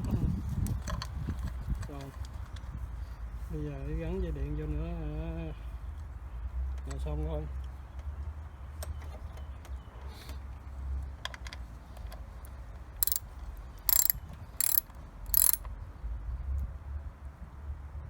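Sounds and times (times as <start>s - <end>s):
ratchet wrench clicking: 13.0s - 13.2s, 13.9s - 15.7s.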